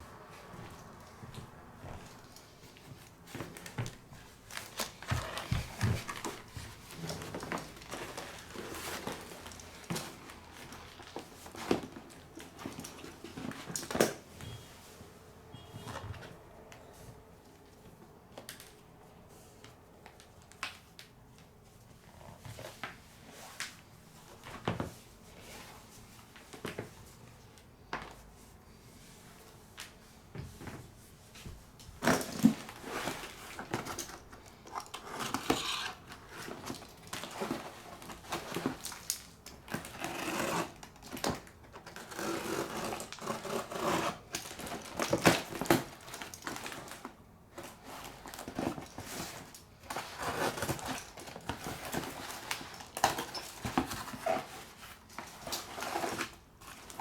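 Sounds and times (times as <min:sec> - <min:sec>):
shoe box packaging rustling: 0:00.1 - 0:14.4, 0:32.0 - 0:57.0.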